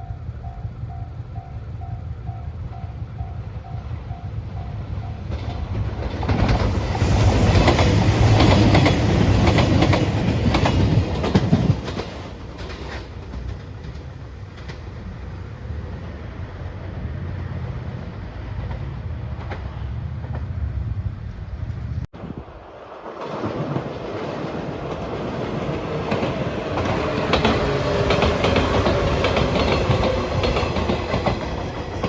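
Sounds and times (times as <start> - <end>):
train rumble: 0.0 - 32.0
train wheels clacking over rail joints: 0.4 - 15.3, 23.2 - 32.0.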